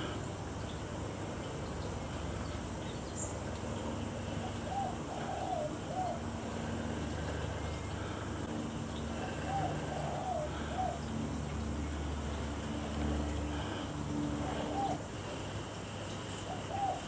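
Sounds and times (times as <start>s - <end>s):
bird calling: 4.3s - 8.2s, 8.9s - 11.2s, 13.4s - 15.1s, 16.5s - 17.0s.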